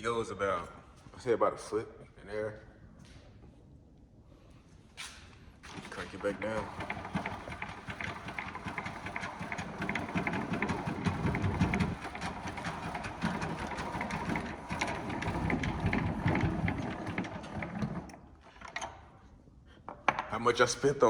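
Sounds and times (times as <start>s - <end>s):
hand crank mechanism clicking: 5.7s - 19.1s.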